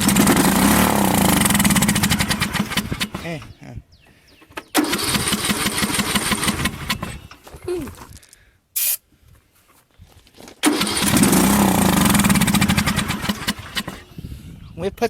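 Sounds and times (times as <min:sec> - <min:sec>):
mower engine cranking: 0:00.0 - 0:08.3, 0:10.6 - 0:14.2.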